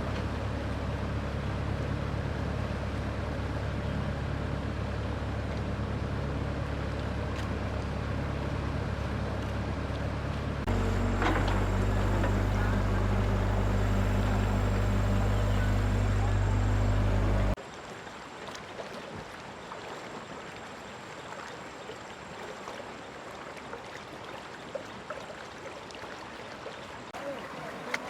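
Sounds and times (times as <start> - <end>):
engine running: 0.0 - 17.6.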